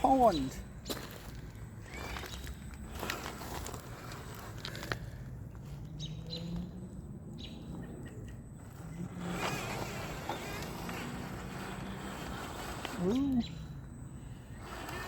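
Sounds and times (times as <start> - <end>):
electric motor of rc truck buzzing: 1.0 - 5.0, 8.6 - 15.0.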